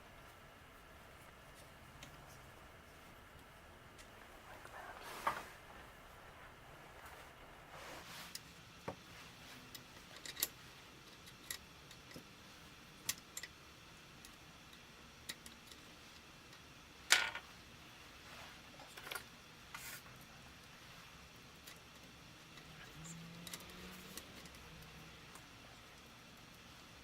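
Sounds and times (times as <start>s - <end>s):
small clicks and taps of tools: 14.2s - 16.7s.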